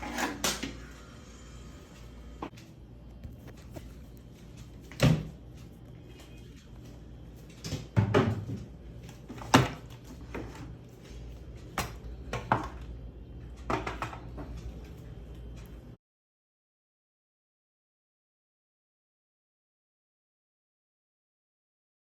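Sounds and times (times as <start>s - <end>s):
washing machine humming: 0.0s - 16.0s.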